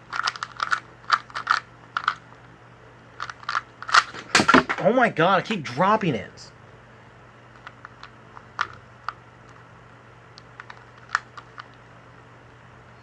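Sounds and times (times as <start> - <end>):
puzzle cube clicking as turned: 0.1 - 2.2, 10.4 - 11.8.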